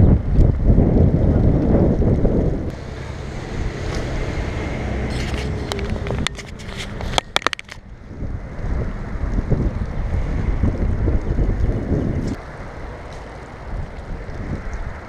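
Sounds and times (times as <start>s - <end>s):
wind buffeting microphone: 0.0s - 15.0s
sharp clicks and knocks: 5.2s - 7.8s.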